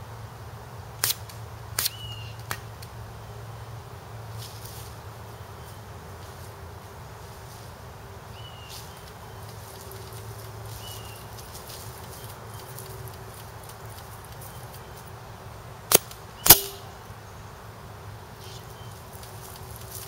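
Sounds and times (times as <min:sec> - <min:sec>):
bb gun shots: 0:15.9 - 0:16.9.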